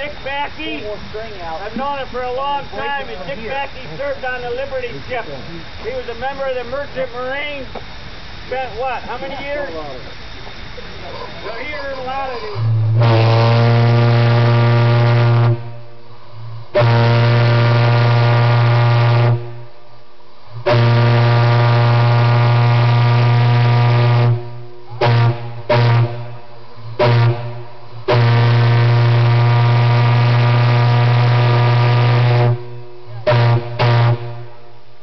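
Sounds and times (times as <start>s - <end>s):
steam whistle blasts: 12.0s - 16.0s, 16.7s - 19.8s, 20.6s - 34.6s.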